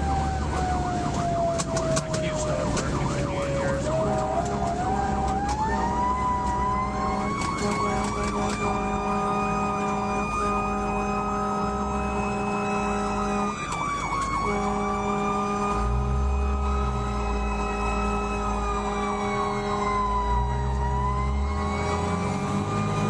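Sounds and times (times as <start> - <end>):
engine rumble: 0.0 - 23.0
fire truck siren: 0.0 - 23.0
air horn blasts: 4.0 - 4.7, 6.8 - 13.6, 14.4 - 19.8.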